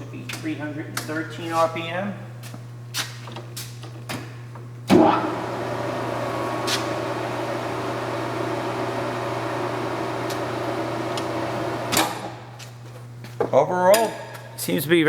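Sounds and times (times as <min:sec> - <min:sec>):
lathe motor and gearing humming: 0:04.9 - 0:12.7.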